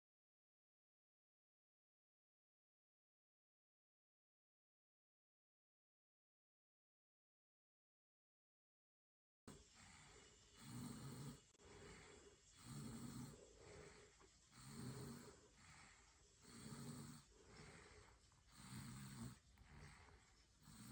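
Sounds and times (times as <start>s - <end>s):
soft breathing: 9.5s - 20.9s
toddler snoring faintly: 9.5s - 20.9s.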